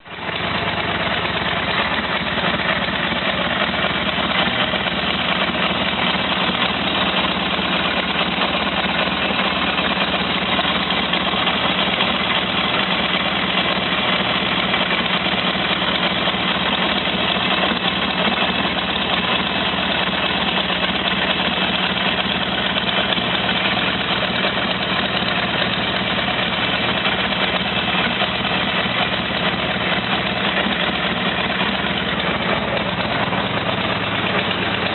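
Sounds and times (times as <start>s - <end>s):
motorcycle engine idling: 0.0s - 34.9s.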